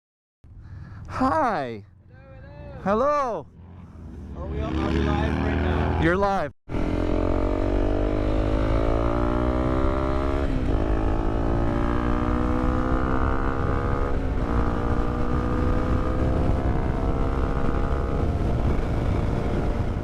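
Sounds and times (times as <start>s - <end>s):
motorcycle engine accelerating: 2.0s - 20.0s
wind rumble on microphone: 6.8s - 20.0s.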